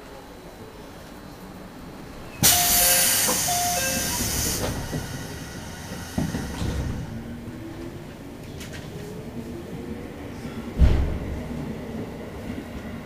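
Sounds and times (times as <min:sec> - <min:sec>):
train low hum: 0:00.0 - 0:13.0
air brakes hissing: 0:02.4 - 0:07.3
thud: 0:10.8 - 0:11.3.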